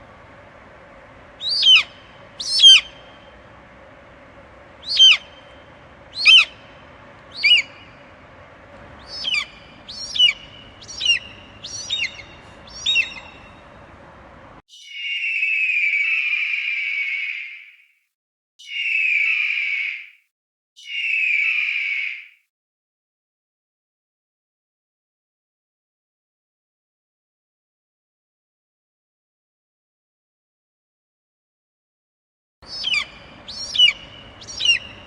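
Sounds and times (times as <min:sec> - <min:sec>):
steady rasping sound: 0:00.0 - 0:14.6
eagle calling: 0:00.6 - 0:03.8, 0:04.4 - 0:13.9, 0:14.8 - 0:17.8, 0:18.6 - 0:20.1, 0:20.8 - 0:22.3, 0:32.6 - 0:35.0.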